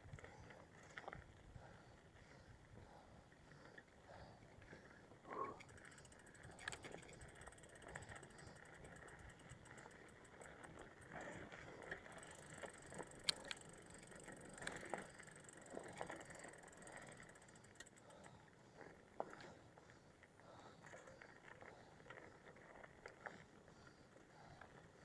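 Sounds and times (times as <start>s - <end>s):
bicycle clicks and rattles: 0.0s - 2.5s, 3.3s - 25.0s
freewheel ticking: 5.6s - 18.4s.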